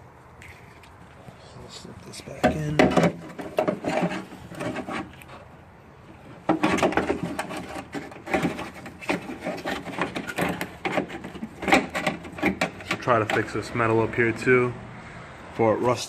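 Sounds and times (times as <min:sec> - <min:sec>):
metal and plastic scraping and clicking: 0:02.3 - 0:05.5, 0:06.1 - 0:13.7.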